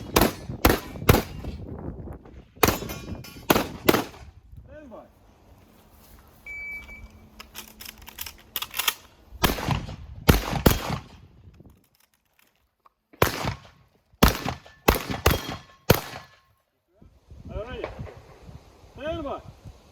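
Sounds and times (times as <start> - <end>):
shotgun shots: 0.0 - 1.6, 2.6 - 4.3, 9.4 - 11.2, 13.2 - 16.4.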